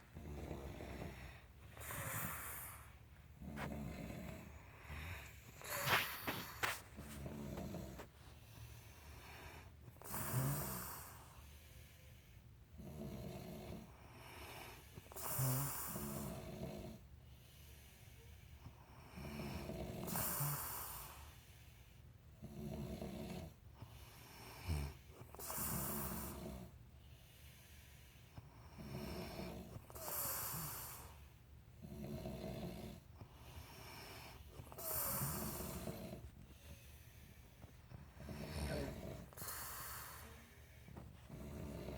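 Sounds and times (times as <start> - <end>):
harsh rattling snore: 0.0 - 8.2, 9.1 - 11.4, 12.8 - 17.0, 19.1 - 21.4, 22.4 - 23.6, 24.3 - 26.8, 28.6 - 36.8, 38.0 - 40.5, 41.2 - 41.9
low droning snoring breath: 0.0 - 41.9
loud hissing breaths: 4.6 - 7.0, 23.9 - 31.4, 33.4 - 41.0.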